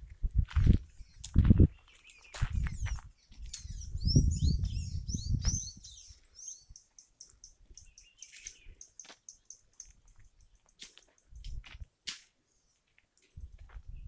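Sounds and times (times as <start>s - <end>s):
small birds chirping: 0.8s - 11.6s.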